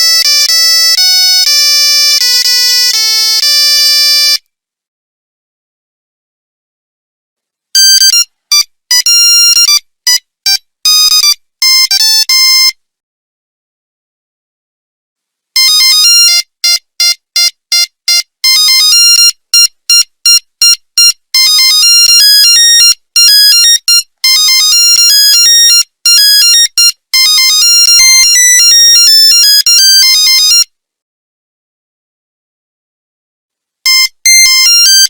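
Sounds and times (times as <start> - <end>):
monophonic phone ringtone beeps: 7.8 - 12.8, 15.6 - 30.7, 33.9 - 35.0.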